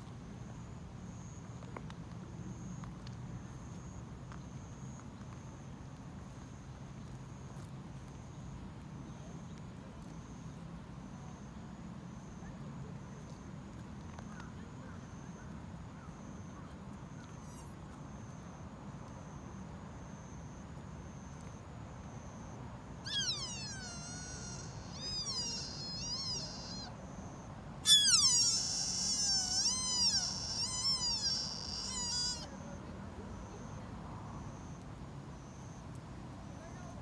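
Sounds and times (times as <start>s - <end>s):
deer fawn bleating: 23.1s - 26.9s, 27.9s - 32.5s.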